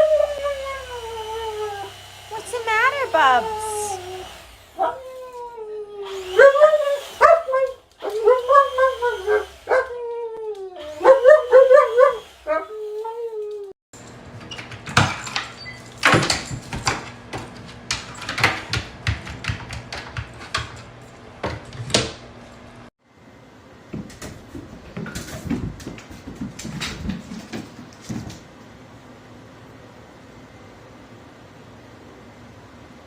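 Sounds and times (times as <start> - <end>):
knocks taps and clatter: 14.0 - 22.3.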